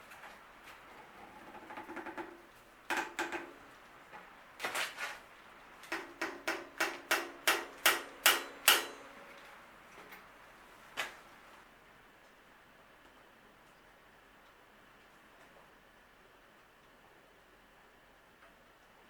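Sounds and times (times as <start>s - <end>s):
sharp metallic taps: 5.9s - 9.3s.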